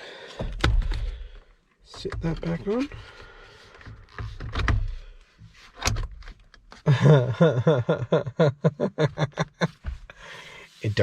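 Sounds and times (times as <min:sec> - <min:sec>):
man's voice: 0:10.8 - 0:11.0.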